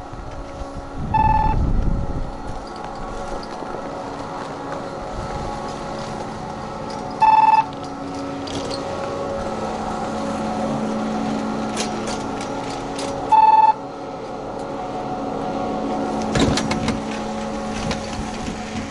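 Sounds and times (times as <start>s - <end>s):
low rumble: 0.0s - 18.9s
steady mechanical lift hum: 0.0s - 18.9s
high electronic trill chime: 1.2s - 1.6s, 7.2s - 7.7s.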